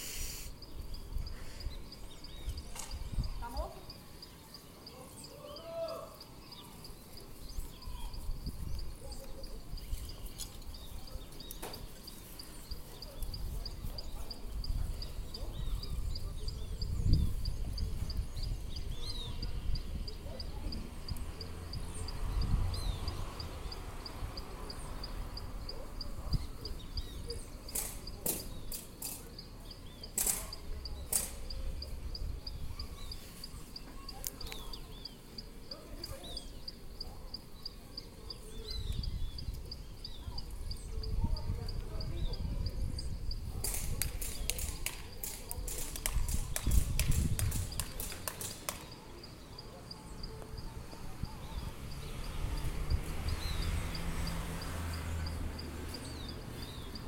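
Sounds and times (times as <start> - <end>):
bird-like chirps: 0.0 - 57.0
wind rumble on microphone: 0.8 - 3.7, 7.5 - 11.1, 13.1 - 24.5, 38.6 - 48.2
high-pitched ticking: 12.1 - 43.5
sharp snaps and clicks: 27.0 - 29.4, 30.0 - 32.2, 32.8 - 36.2, 43.6 - 51.0
sharp click: 27.7 - 29.3, 30.1 - 31.6.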